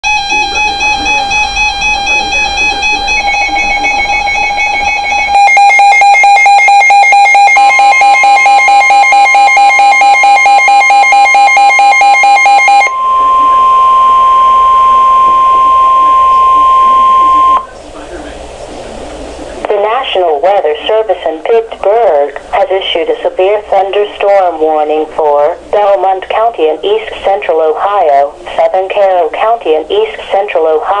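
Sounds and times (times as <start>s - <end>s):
electronic alert beeps pulsing: 0.0s - 17.7s
steady high alarm tone: 0.0s - 17.7s.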